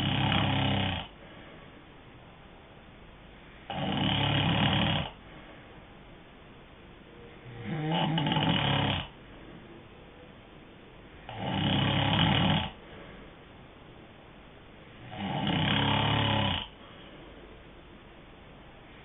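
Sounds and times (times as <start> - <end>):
loud snores: 0.0 - 1.2, 3.7 - 5.2, 7.4 - 9.2, 11.3 - 12.8, 15.0 - 16.8.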